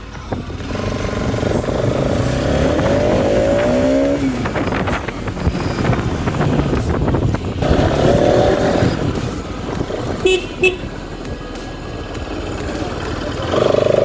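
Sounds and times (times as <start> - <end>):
motorcycle engine running: 0.0 - 14.0
traffic noise: 0.0 - 14.0
vehicle horn toots: 10.1 - 11.0.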